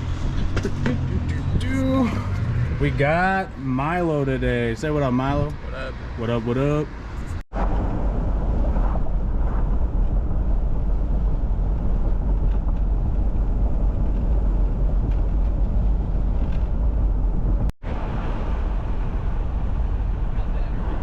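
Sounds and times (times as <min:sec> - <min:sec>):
vehicle road and engine noise: 0:00.0 - 0:21.0.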